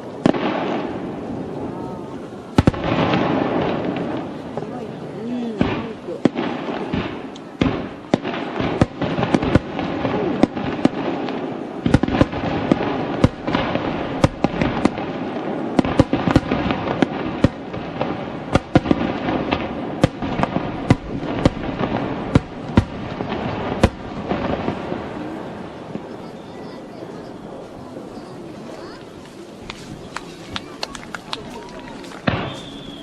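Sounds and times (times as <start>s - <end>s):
fireworks bangs: 0.0s - 33.0s
fireworks crackle: 0.0s - 33.0s.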